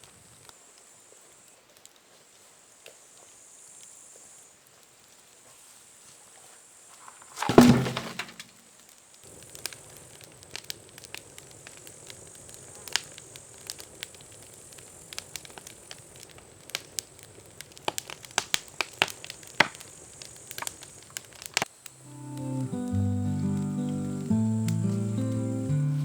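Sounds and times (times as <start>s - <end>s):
campfire crackling and popping: 7.0s - 26.0s
fire hiss: 8.8s - 26.0s.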